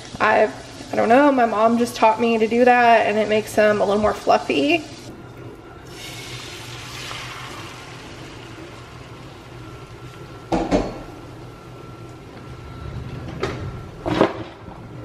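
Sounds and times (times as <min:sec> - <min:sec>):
eggs sizzling in a pan: 0:00.0 - 0:05.1, 0:05.8 - 0:10.6.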